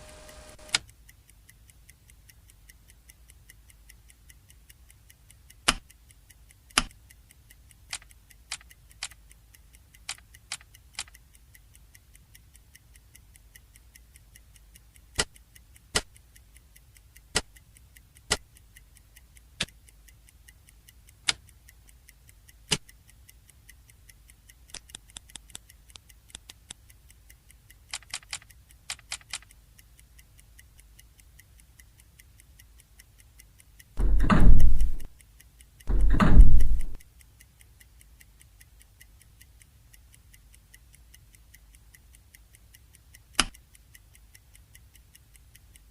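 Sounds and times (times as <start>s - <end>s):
faint low hum: 0.0s - 0.8s
sharp clicks and ticks: 0.0s - 45.9s.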